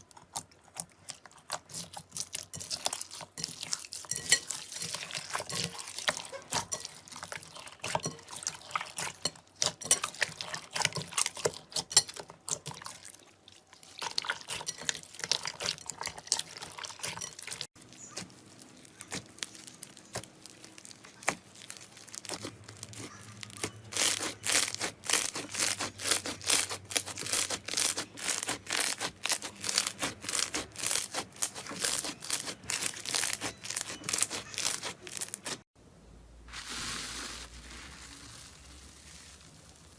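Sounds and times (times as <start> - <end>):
slime squelching and clicking: 17.9 - 35.6
slime popping: 18.0 - 35.6.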